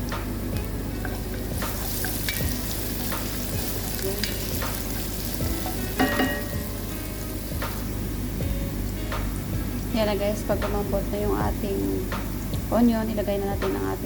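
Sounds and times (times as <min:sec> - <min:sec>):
onions sizzling in hot oil: 0:00.0 - 0:14.0
utensil knocking and scraping pot: 0:00.6 - 0:09.1.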